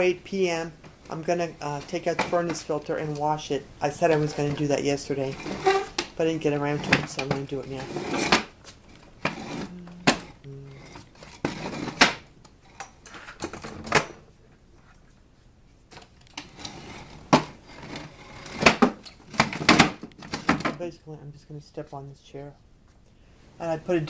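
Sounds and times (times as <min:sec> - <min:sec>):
objects knocking and clattering: 0:12.8 - 0:14.3, 0:17.3 - 0:20.8.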